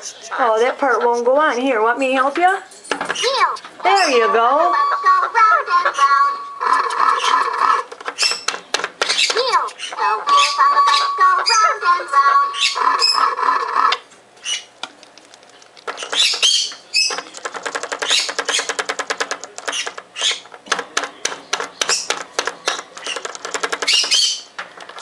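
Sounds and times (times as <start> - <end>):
parrot chirps and squawks: 3.1 - 8.5, 9.1 - 14.7, 15.9 - 17.2, 23.0 - 24.5
electronic toy tune: 4.0 - 7.8
rapid plastic clicks and taps: 6.8 - 9.6, 14.8 - 25.0.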